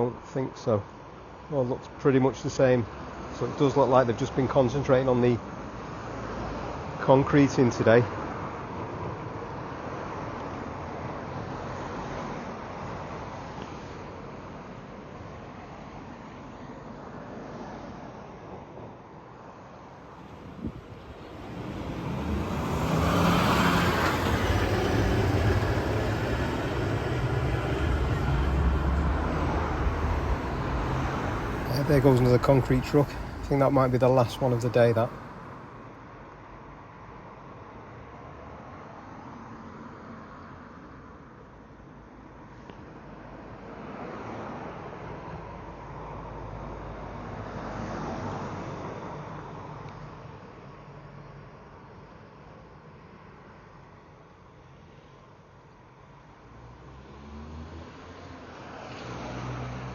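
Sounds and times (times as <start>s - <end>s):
truck engine and road noise: 0.0s - 59.9s
vehicle passing by: 20.0s - 35.8s, 56.5s - 59.9s.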